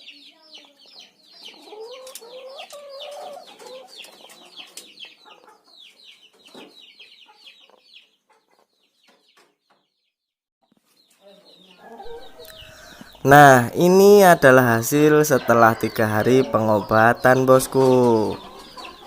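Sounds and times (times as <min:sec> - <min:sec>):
chickens clucking: 0:00.0 - 0:10.0, 0:10.7 - 0:19.0
chicks peeping: 0:00.0 - 0:19.0.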